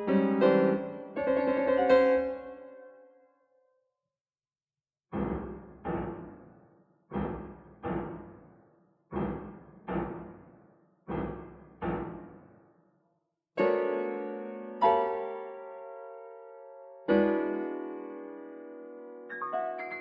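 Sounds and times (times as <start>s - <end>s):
piano chords: 0.0s - 3.0s, 5.1s - 12.6s, 13.6s - 20.0s.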